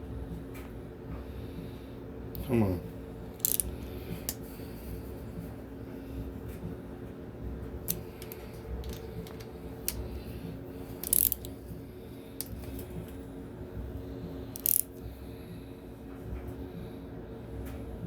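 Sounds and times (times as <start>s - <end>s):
steady low hum: 0.0s - 18.0s
metallic clicks from hand tools: 3.4s - 3.7s, 11.0s - 11.5s, 14.6s - 14.9s.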